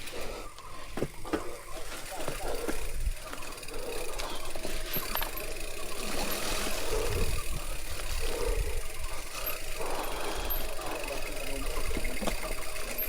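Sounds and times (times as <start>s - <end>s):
bike tyres rumbling: 0.0s - 13.0s
wind buffeting the microphone: 6.9s - 9.2s.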